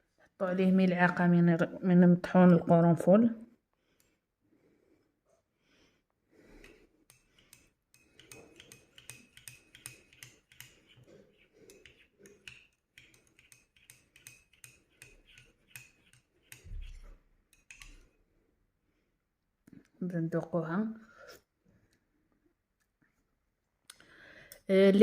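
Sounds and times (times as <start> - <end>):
metal spoon clinking in a cup: 7.1 - 11.0, 11.6 - 16.8.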